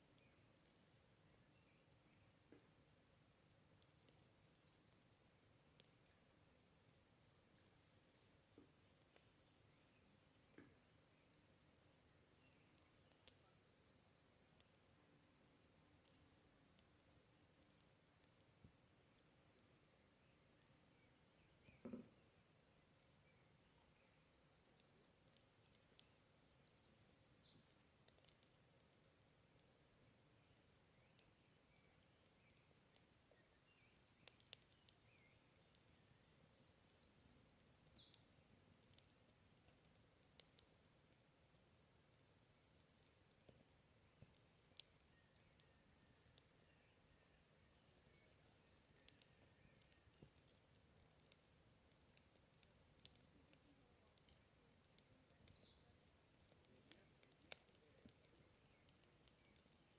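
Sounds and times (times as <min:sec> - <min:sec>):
faint campfire crackles: 0:00.0 - 0:59.9
faint sharp clicks: 0:03.8 - 0:07.0, 0:08.5 - 0:09.3, 0:12.6 - 0:13.9, 0:14.5 - 0:14.9, 0:16.0 - 0:19.7, 0:20.6 - 0:22.1, 0:24.7 - 0:25.9, 0:26.9 - 0:29.8, 0:31.0 - 0:36.1, 0:37.5 - 0:46.5, 0:47.8 - 0:59.9
songbird trilling: 0:25.8 - 0:27.4, 0:36.1 - 0:38.2, 0:55.0 - 0:56.0.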